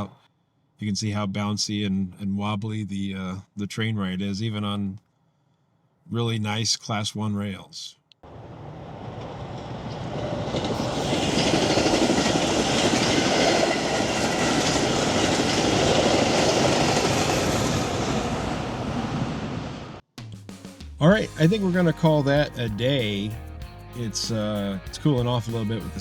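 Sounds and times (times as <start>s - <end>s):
train wheels on rails: 8.3s - 19.9s.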